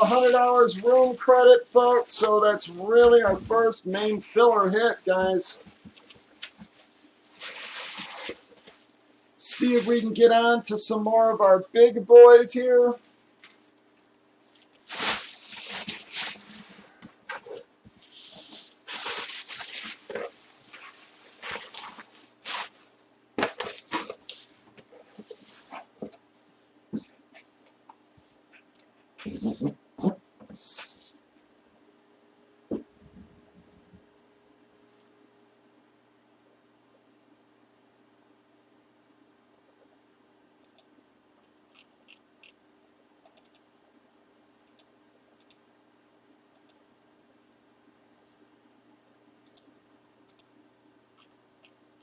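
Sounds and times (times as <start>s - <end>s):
packaging crinkling and rustling: 0.0s - 1.4s, 5.0s - 10.0s, 13.0s - 25.9s
low steady hum: 0.0s - 52.0s
computer mouse clicks: 40.6s - 40.9s, 41.8s - 43.6s, 44.6s - 45.6s, 49.4s - 49.7s.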